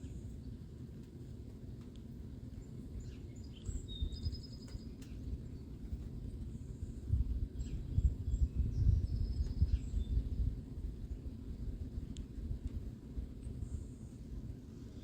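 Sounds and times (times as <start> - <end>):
wind buffeting microphone: 5.1 - 15.0.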